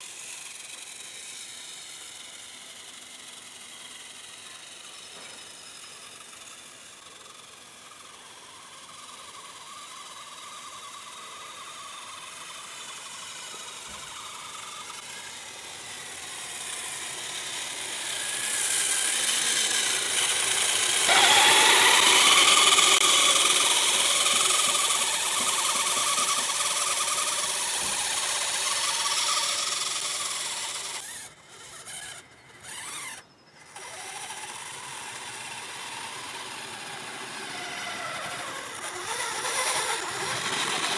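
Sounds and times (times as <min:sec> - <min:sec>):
electric motor whine: 0:00.0 - 0:40.9.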